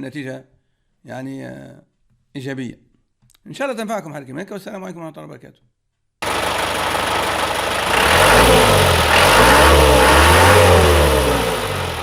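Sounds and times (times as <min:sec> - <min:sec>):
truck engine revving: 0:06.2 - 0:12.0.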